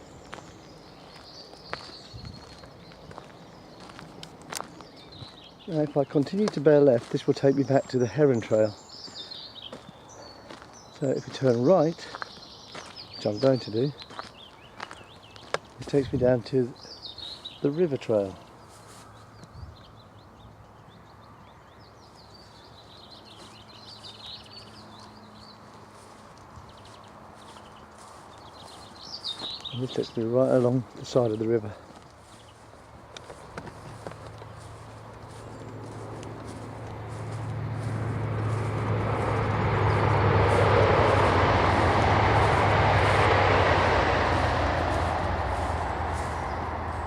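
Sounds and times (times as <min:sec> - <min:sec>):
outdoor background noise: 0:00.0 - 0:47.0
songbirds singing: 0:00.0 - 0:47.0
engine passing by: 0:33.4 - 0:47.0.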